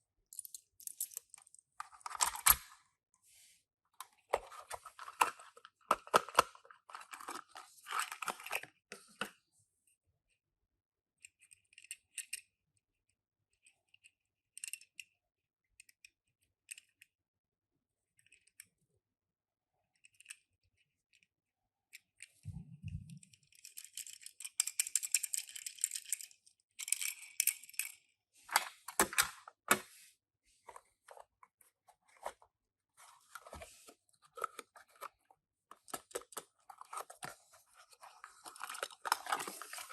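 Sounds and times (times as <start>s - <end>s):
toy cars clicking and rattling: 11.2s - 12.5s, 13.6s - 15.2s, 19.9s - 21.3s, 23.3s - 28.1s, 35.7s - 39.9s
packaging rustling: 35.8s - 39.9s.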